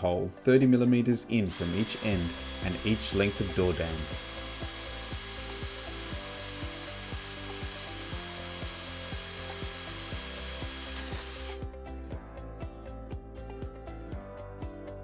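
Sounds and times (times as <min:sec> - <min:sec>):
background music with steady beat: 0:00.0 - 0:15.0
cordless drill boring: 0:01.5 - 0:11.6.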